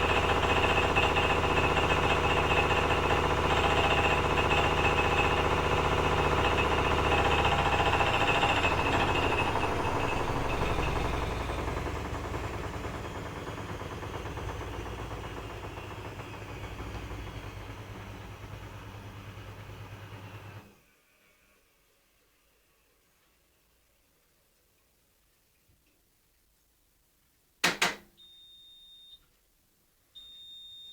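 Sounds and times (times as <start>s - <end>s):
washing machine spinning: 0.0s - 20.7s.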